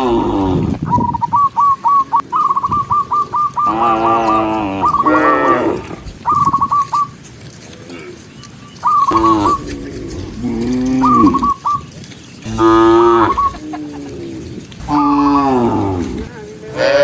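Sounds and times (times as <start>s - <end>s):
cattle mooing: 3.4s - 6.0s, 9.1s - 11.6s, 12.4s - 17.0s.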